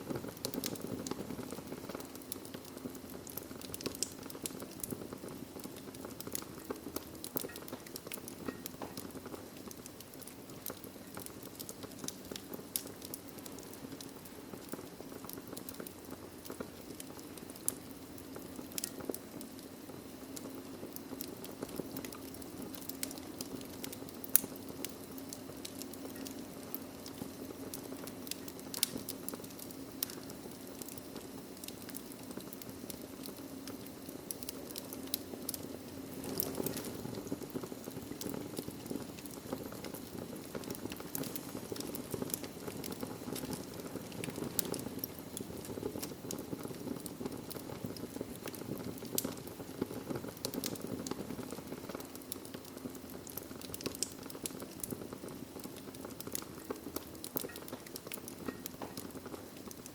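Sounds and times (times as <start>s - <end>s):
fire crackling and popping: 0.0s - 59.9s
wood fire rushing: 21.2s - 59.9s.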